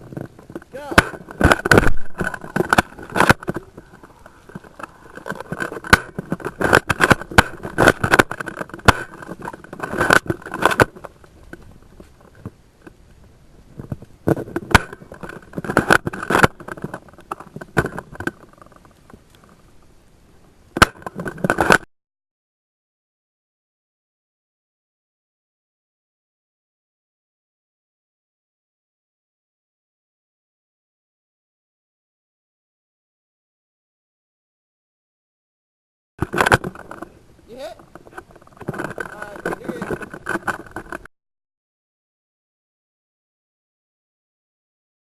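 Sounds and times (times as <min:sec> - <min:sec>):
rustling and clatter of players: 0:00.0 - 0:21.9, 0:36.2 - 0:41.1.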